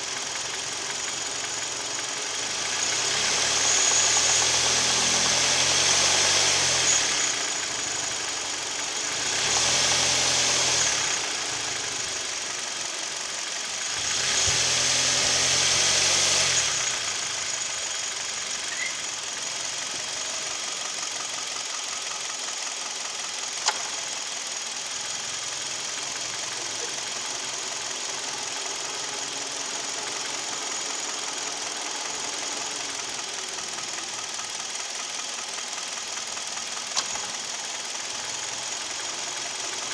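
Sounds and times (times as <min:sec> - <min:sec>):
engine running with knock: 0:13.9 - 0:17.6, 0:23.5 - 0:24.2, 0:35.9 - 0:38.7
sharp click: 0:23.6 - 0:24.0, 0:36.9 - 0:37.3.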